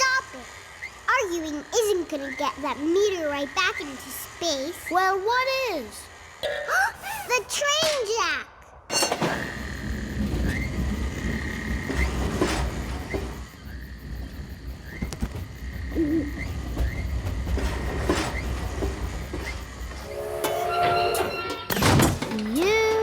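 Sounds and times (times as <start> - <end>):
scattered knocks: 8.9 - 20.6
low rail vehicle rumble: 9.3 - 23.0
high squeak chirping upward: 20.0 - 22.1.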